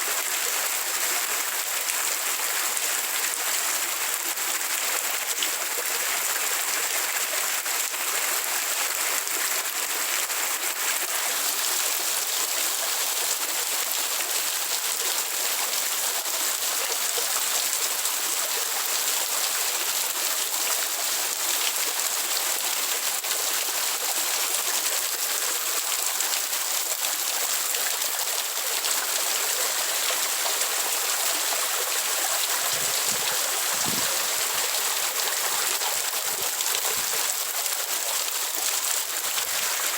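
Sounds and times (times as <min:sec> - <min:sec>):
water running: 0:29.8 - 0:37.4.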